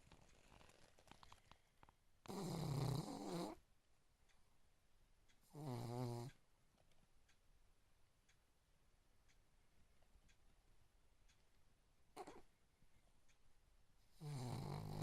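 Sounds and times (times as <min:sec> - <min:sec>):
pet snoring: 0:02.2 - 0:03.6, 0:05.5 - 0:06.4, 0:12.2 - 0:12.4, 0:14.2 - 0:15.0.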